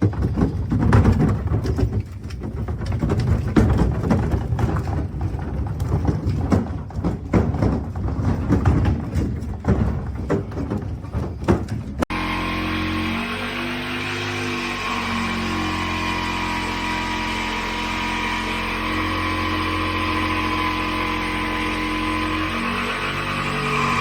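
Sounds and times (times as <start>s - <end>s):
furniture rattling over cobblestones: 0.0s - 12.1s.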